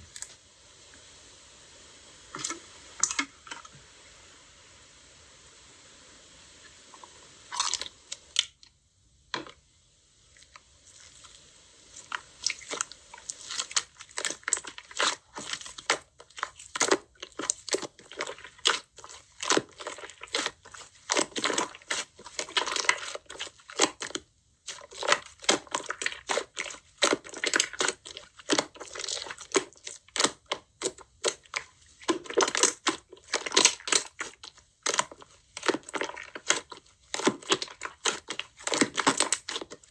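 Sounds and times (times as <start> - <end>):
slime squished by hand: 12.0 - 39.9.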